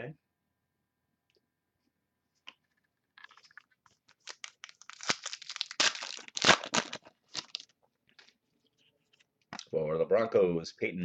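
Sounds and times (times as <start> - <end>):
wrapper being torn and crinkled: 3.2 - 7.7.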